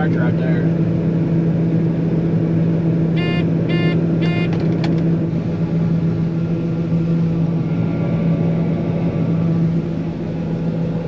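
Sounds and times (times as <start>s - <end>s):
farm machinery engine humming: 1.6s - 11.0s
short electronic beeps: 3.2s - 4.6s.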